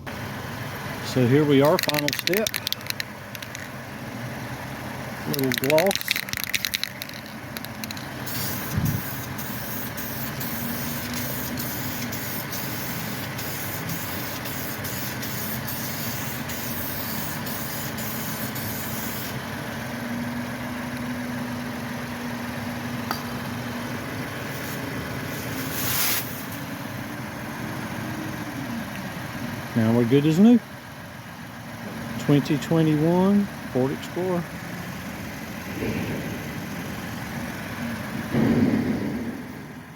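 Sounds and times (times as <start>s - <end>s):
steady engine-like hum: 0.0s - 39.9s
aerosol can spraying: 5.4s - 19.4s, 24.4s - 26.7s.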